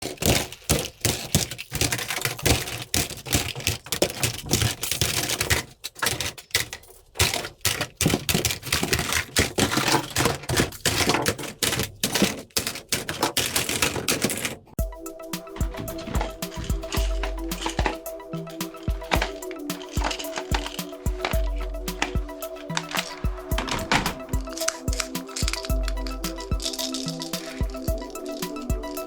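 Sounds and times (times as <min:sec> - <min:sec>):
rapid irregular clicks and clacks: 0:00.0 - 0:29.0.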